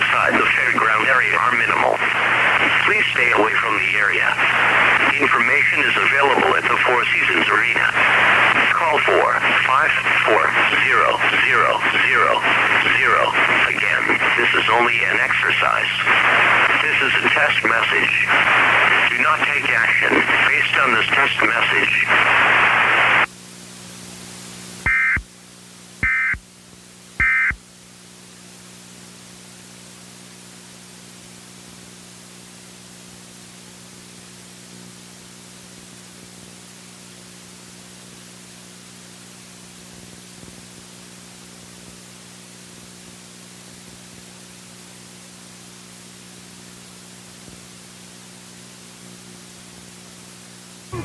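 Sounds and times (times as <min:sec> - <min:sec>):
static hiss: 0:00.0 - 0:25.2, 0:50.8 - 0:51.0
data tone bursts: 0:24.9 - 0:25.2, 0:26.0 - 0:26.4, 0:27.2 - 0:27.6.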